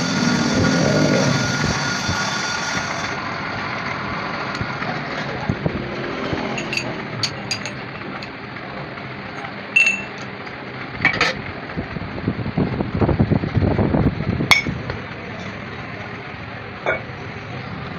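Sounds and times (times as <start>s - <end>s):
metal tools clinking: 6.5s - 8.0s, 9.8s - 10.3s.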